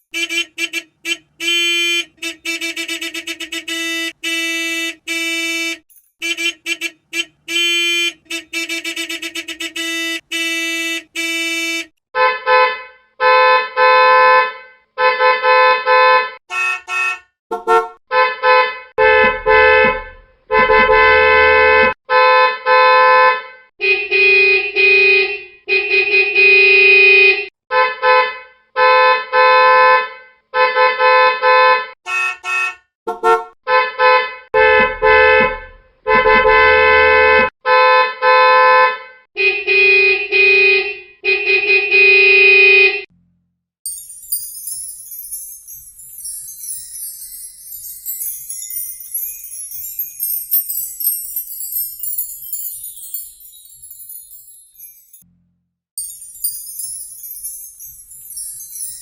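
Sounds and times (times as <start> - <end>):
high-pitched horn honking: 0.0 - 43.1.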